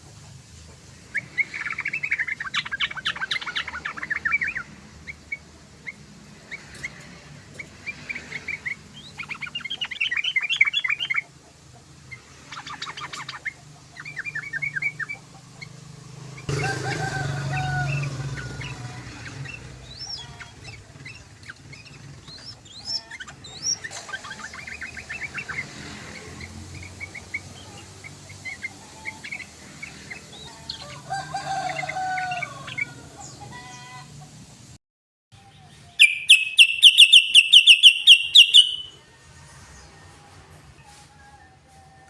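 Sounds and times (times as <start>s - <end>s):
bird chirping and warbling: 1.0s - 33.8s, 35.4s - 39.0s
rapid bird trill: 36.0s - 39.0s.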